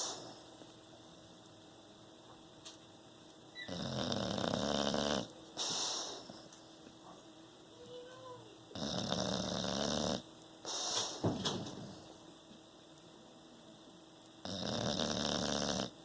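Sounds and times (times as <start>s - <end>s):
dog snoring: 0.0s - 0.4s, 3.6s - 6.4s, 8.7s - 11.2s, 14.4s - 16.0s.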